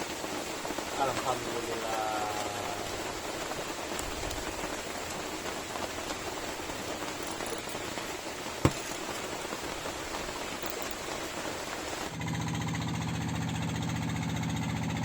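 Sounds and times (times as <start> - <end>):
steady rain falling: 0.0 - 12.2.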